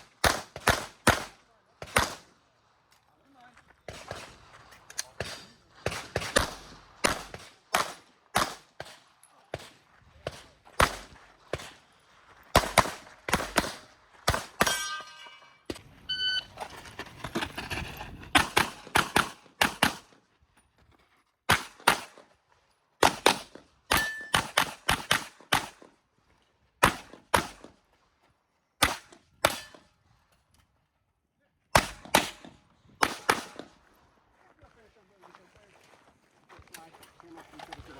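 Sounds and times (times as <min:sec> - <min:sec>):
pistol firing: 0:00.0 - 0:02.3, 0:05.0 - 0:09.0, 0:09.6 - 0:11.8, 0:12.6 - 0:14.8, 0:18.4 - 0:20.1, 0:23.0 - 0:25.9, 0:26.8 - 0:27.7, 0:31.7 - 0:33.8
bullets ringing on steel targets: 0:14.5 - 0:15.7, 0:23.9 - 0:24.7, 0:29.4 - 0:29.9.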